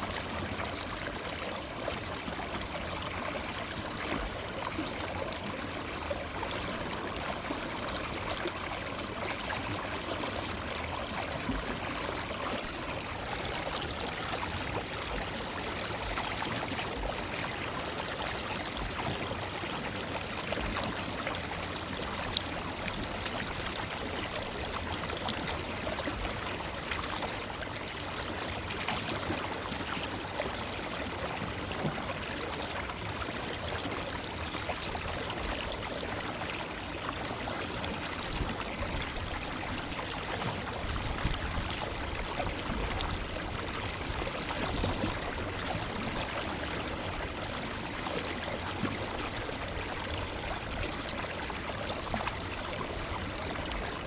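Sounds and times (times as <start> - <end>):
river flowing over rocks: 38.0 - 54.0.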